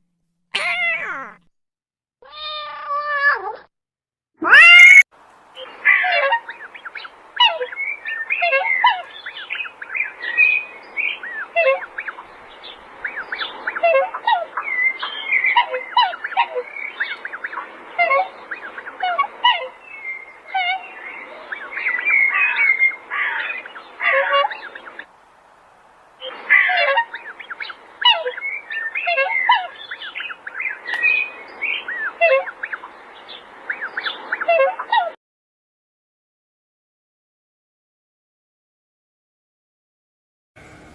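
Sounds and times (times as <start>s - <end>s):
lower bird calls: 5.6s - 25.1s, 26.2s - 35.1s
young birds peeping: 5.6s - 25.1s, 26.2s - 35.2s.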